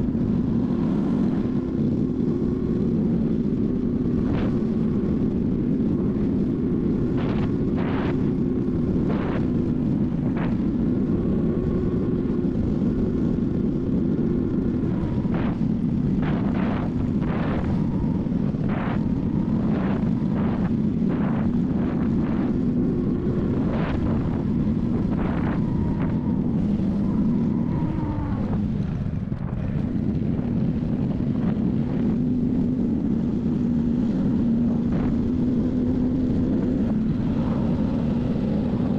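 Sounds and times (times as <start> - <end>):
motorcycle engine running: 0.0 - 38.9
wind noise on microphone: 0.0 - 38.9.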